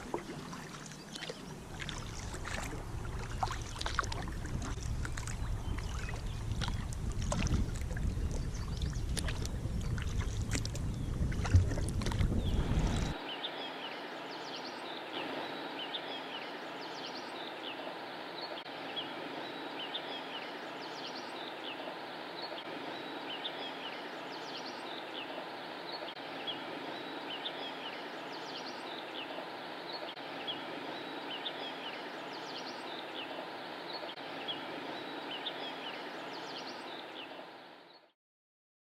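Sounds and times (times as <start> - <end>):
paddle in water: 0.0 - 37.8
wind rumbling on microphone: 1.4 - 13.2.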